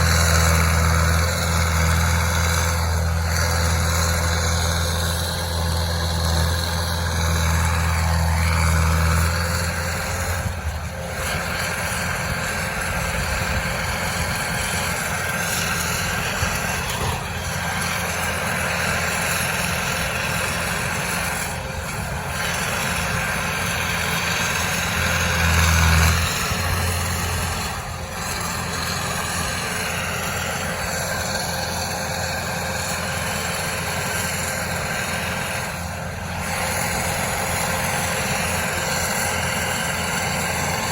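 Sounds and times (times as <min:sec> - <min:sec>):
heavy equipment engine running: 0:00.0 - 0:40.9.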